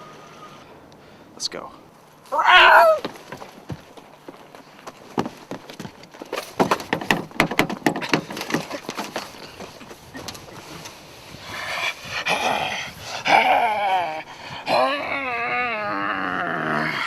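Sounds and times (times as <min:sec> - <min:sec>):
bobcat yowling: 0:02.3 - 0:03.1, 0:11.4 - 0:17.0
sharp knocks: 0:06.3 - 0:09.8.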